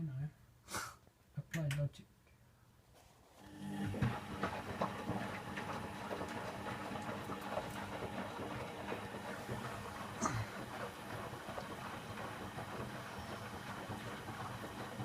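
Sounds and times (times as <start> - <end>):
washing machine motor hum: 3.4 - 15.0
washing machine rattling and clicking: 3.7 - 15.0.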